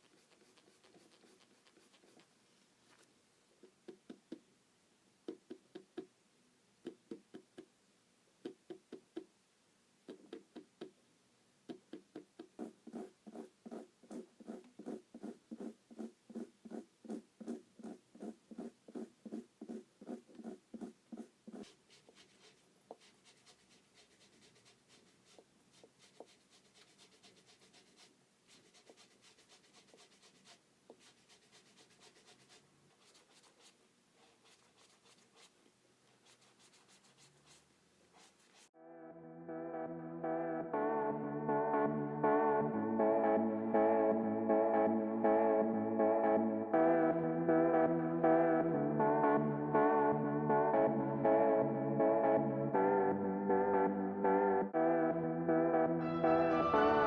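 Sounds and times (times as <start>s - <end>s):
soft scratching and rustling: 12.6s - 38.7s.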